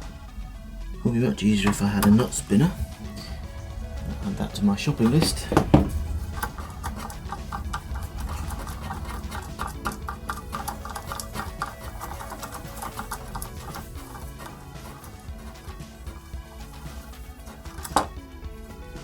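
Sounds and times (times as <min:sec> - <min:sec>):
quiet background music: 0:00.0 - 0:19.0.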